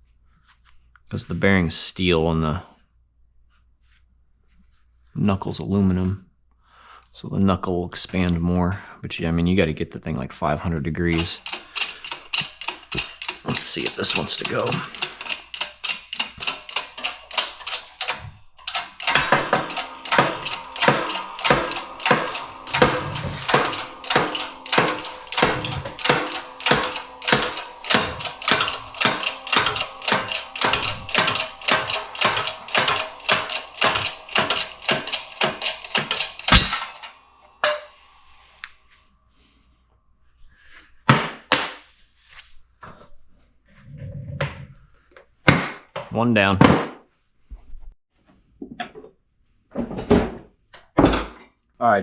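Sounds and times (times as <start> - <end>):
hammer striking metal: 11.1 - 38.1.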